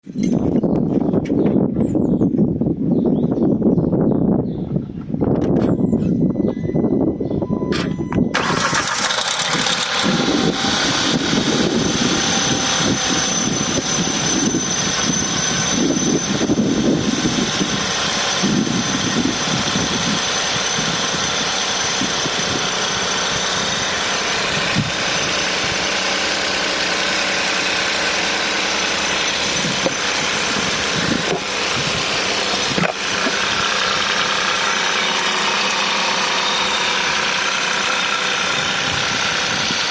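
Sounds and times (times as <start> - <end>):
car engine idling: 8.2 - 39.9.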